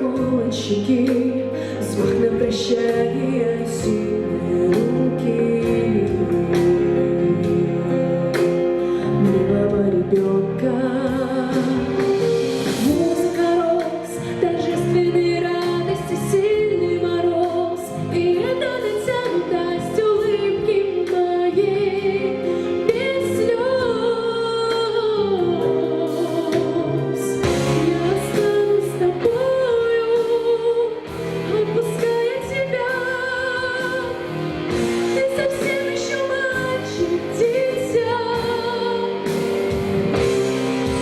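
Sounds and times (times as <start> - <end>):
instrumental backing: 0.0 - 41.0
woman singing: 0.0 - 41.0.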